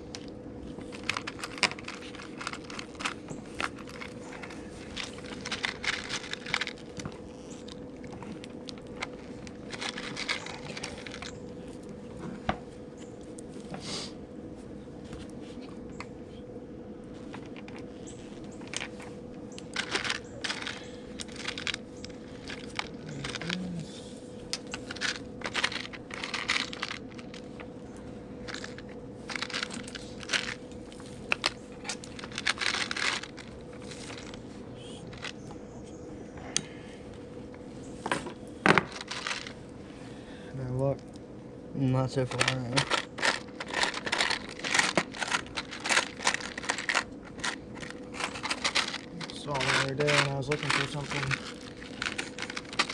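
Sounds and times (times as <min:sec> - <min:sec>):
steady hum: 0:00.0 - 0:52.9.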